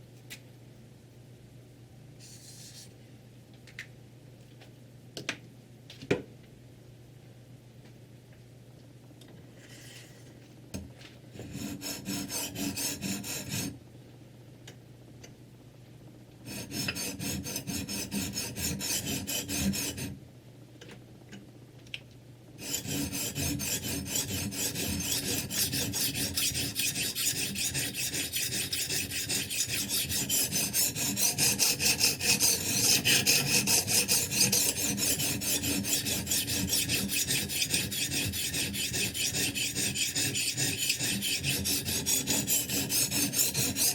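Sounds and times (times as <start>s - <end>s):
sharpening stone rasping on knife: 22.6s - 43.9s.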